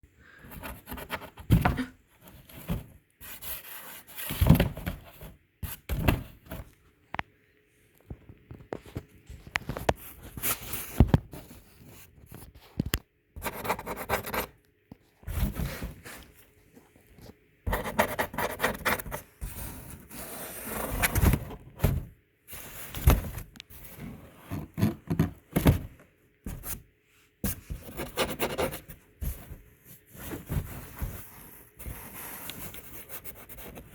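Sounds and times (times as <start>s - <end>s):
kitten scratching inside a box: 17.7s - 21.6s, 27.5s - 29.7s.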